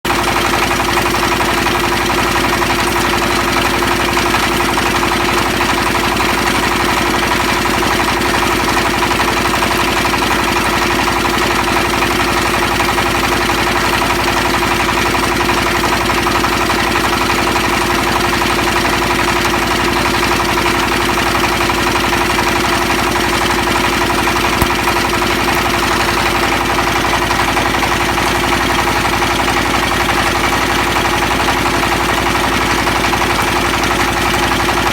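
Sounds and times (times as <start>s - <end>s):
extruder machine humming: 23.4s - 34.9s.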